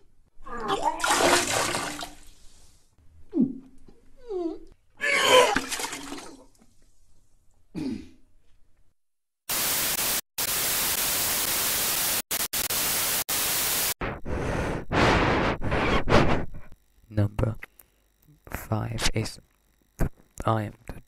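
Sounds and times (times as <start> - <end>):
loud static hiss: 9.5 - 21.0.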